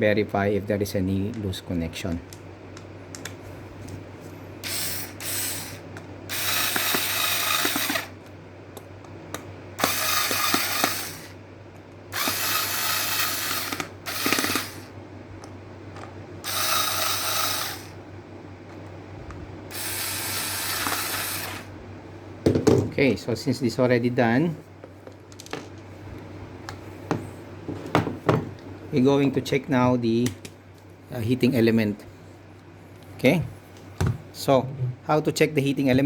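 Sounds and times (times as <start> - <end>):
screwdriver driving screws: 4.6 - 8.1, 9.8 - 11.3, 12.2 - 14.9.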